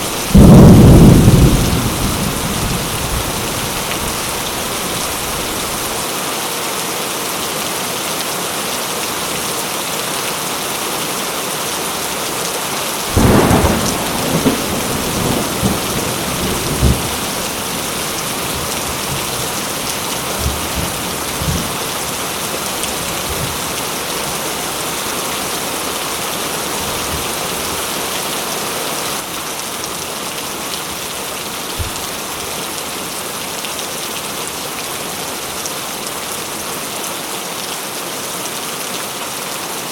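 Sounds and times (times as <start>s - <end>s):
heavy rain falling: 0.0s - 39.9s
thunder clap and rumble: 0.3s - 4.4s, 13.1s - 22.2s.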